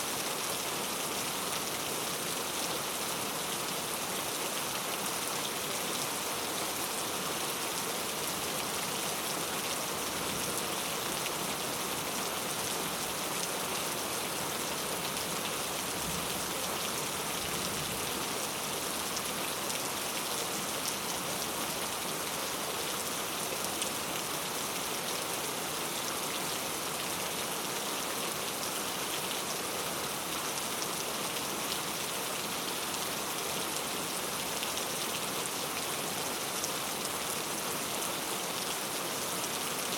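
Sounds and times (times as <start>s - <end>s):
heavy rain on a tent: 0.0s - 39.9s.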